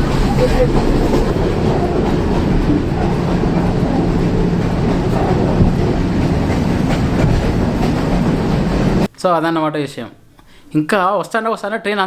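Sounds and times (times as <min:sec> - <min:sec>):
train rumbling on rails: 0:00.0 - 0:09.1.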